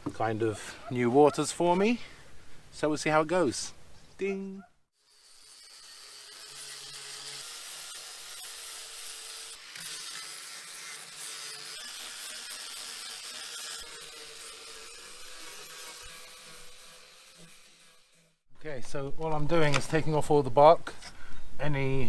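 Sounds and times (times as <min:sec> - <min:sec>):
power tool grinding wood: 0:05.0 - 0:18.4.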